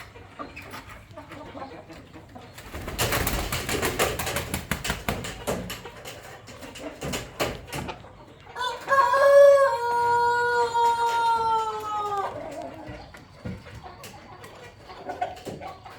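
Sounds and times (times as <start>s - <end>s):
rustling and clattering: 2.6s - 8.1s
rooster crowing: 8.6s - 12.4s.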